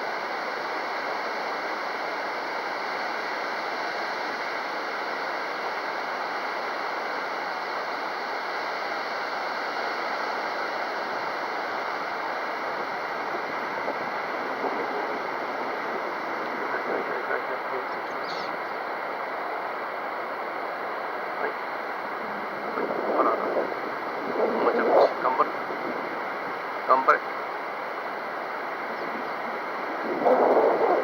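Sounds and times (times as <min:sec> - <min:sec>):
steady wind noise: 0:09.8 - 0:31.0.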